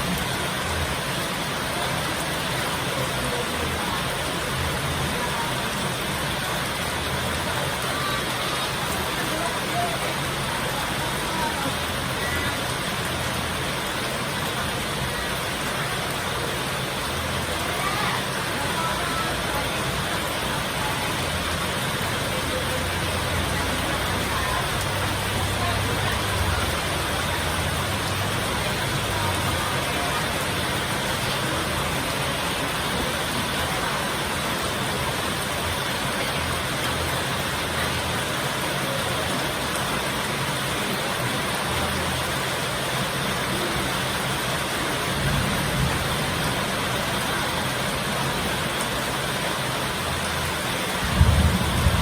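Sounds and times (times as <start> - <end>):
heavy rain falling: 0.0 - 52.0
strong wind: 51.0 - 52.0.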